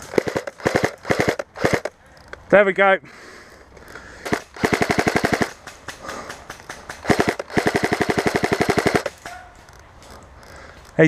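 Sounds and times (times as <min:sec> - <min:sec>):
airsoft gun firing: 0:00.0 - 0:01.9, 0:04.2 - 0:09.4.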